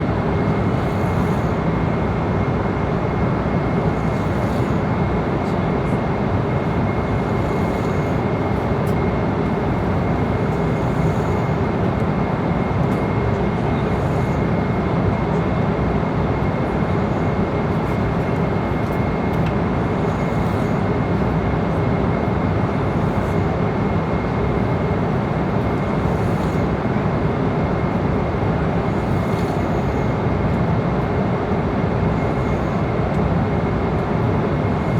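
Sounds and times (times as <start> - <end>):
airliner cabin engine rush: 0.0 - 34.9
thin steady whine: 0.0 - 34.9.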